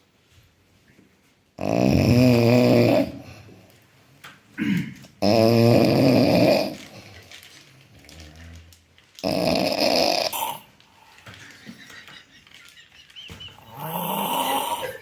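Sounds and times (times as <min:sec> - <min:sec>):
person snoring: 0:01.6 - 0:03.4, 0:04.6 - 0:06.8, 0:09.2 - 0:10.8, 0:13.6 - 0:15.0.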